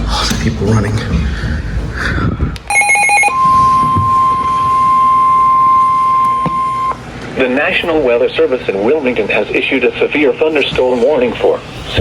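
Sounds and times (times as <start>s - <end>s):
warbling digital data tones: 2.7s - 7.0s
steady warning alarm tone: 2.7s - 12.0s.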